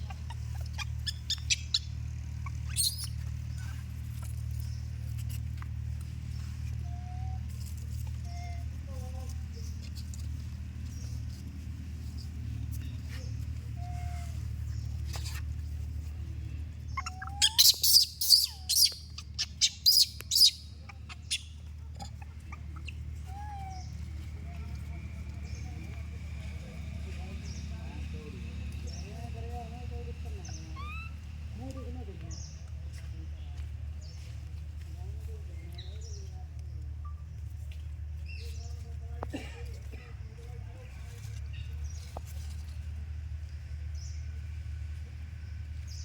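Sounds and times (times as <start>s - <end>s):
high-pitched animal chirps: 0.0s - 3.2s, 17.0s - 23.9s
monkey gliding coos: 0.0s - 4.4s, 16.8s - 24.2s, 30.5s - 31.2s
monkey squeaking: 0.0s - 5.3s, 16.8s - 24.1s, 30.4s - 31.2s
animal squeal: 17.0s - 20.5s.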